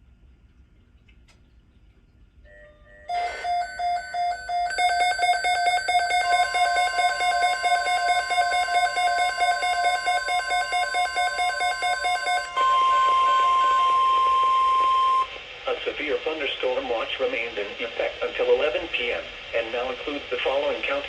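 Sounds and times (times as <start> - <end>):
faint steady warning tone: 2.2 - 21.0
weather radio alarm beeping: 2.7 - 15.4.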